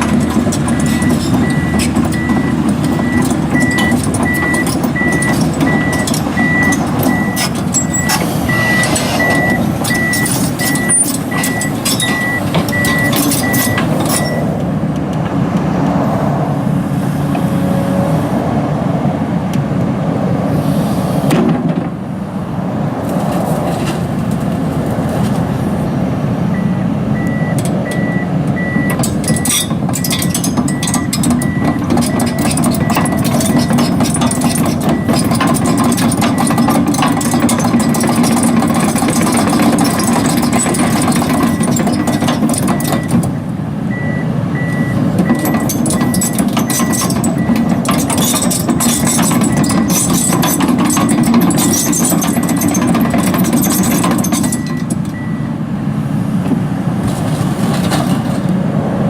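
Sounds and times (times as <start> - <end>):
reversing alarm beeping: 0.0 - 14.5, 26.5 - 38.5, 39.1 - 43.3, 43.9 - 55.6
metal clanks and rattles: 0.0 - 15.4, 27.5 - 43.5, 44.6 - 55.4, 56.4 - 58.5
excavator diesel engine running: 0.0 - 59.0.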